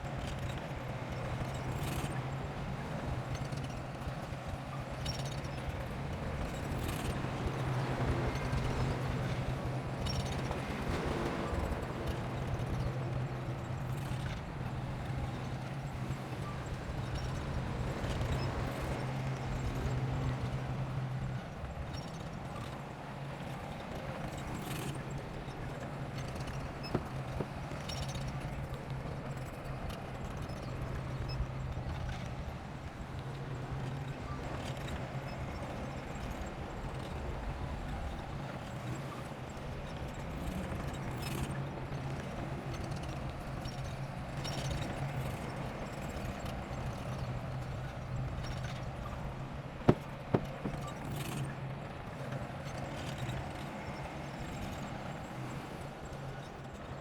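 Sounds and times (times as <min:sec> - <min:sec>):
crawler tracks clanking: 0:49.9 - 0:51.1.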